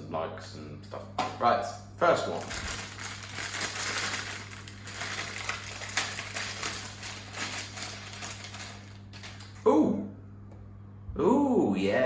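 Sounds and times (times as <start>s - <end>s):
packaging clicks: 2.3s - 9.6s
cardboard box tearing and rustling: 2.4s - 8.6s.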